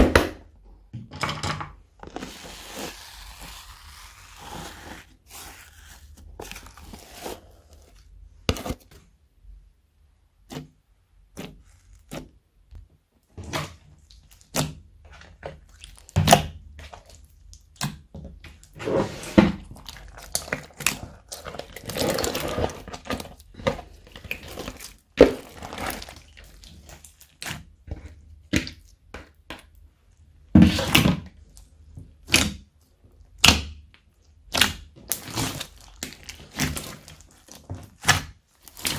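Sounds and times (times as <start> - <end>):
slime squished by hand: 13.4 - 29.8, 30.6 - 38.9.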